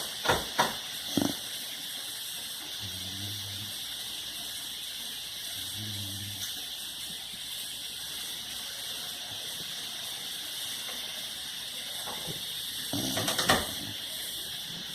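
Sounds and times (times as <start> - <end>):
steady hiss: 0.0 - 14.9
dog snoring: 0.9 - 1.8, 2.7 - 4.2, 5.4 - 6.8, 12.3 - 14.9.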